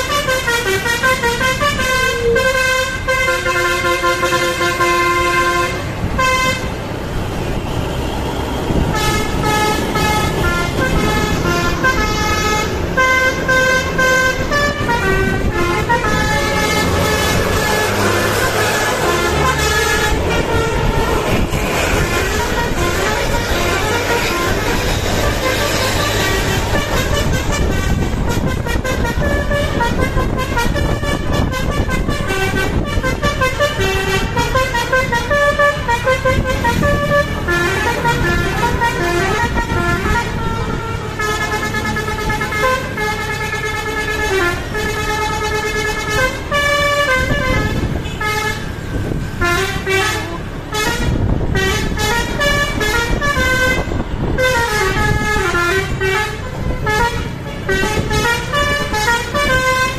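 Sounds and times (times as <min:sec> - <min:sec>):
bus rumble: 0:00.0 - 0:59.9
multi-tone bus horn melody: 0:00.0 - 0:59.9.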